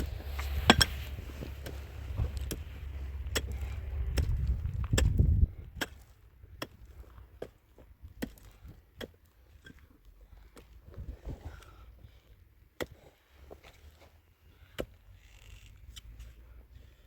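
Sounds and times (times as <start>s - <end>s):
low rumble: 0.0s - 6.5s.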